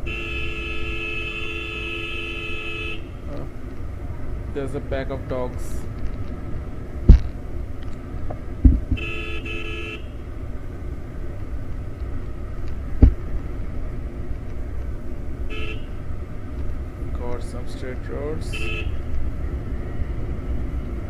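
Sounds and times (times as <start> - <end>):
vehicle horn: 0.0 - 3.3, 9.0 - 10.2, 15.5 - 16.0, 18.4 - 19.1
wind rumble: 3.2 - 9.2
dull thumps: 8.6 - 9.0.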